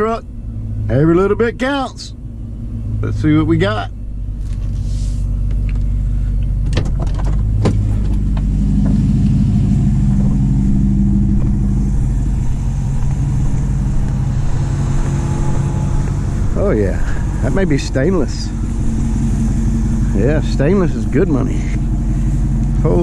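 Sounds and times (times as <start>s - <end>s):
truck engine running: 0.0s - 23.0s.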